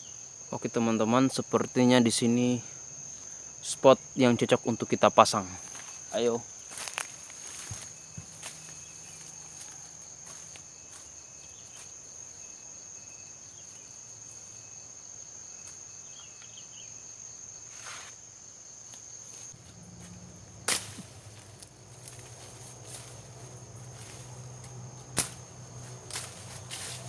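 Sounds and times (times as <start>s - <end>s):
high-pitched insect drone: 0.0s - 27.0s
sharp snap: 20.7s - 21.1s, 25.2s - 25.4s.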